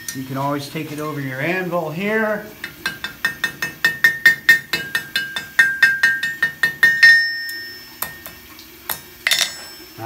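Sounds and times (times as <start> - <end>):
hammer ringing on anvil: 2.6 - 9.8.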